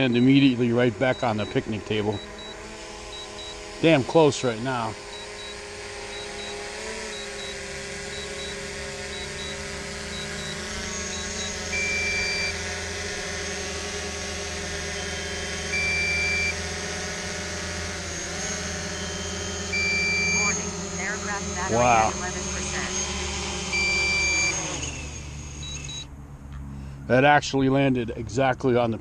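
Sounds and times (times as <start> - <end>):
warning beep: 0.0 - 3.6, 5.1 - 12.7, 14.8 - 16.6, 18.2 - 23.1, 23.7 - 24.7, 25.6 - 26.1
drone propellers whining: 0.0 - 28.3.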